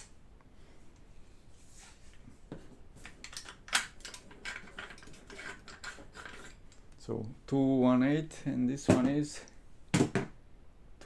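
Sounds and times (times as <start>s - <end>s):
rifle parts clicking and rattling: 3.0s - 6.8s.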